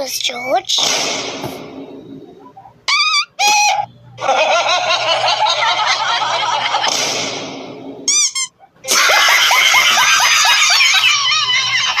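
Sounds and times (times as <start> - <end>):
high cartoon voices and squeaks: 2.4 - 3.9, 8.1 - 8.8
short repeated yelps: 2.9 - 3.9.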